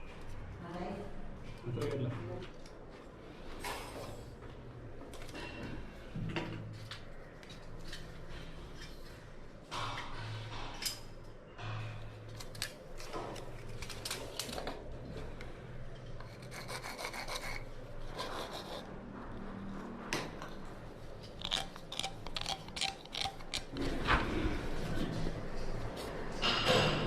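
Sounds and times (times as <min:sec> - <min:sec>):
scraping on plumbing pipe: 0:21.2 - 0:23.8
pipe fittings clicking and knocking: 0:21.3 - 0:23.8.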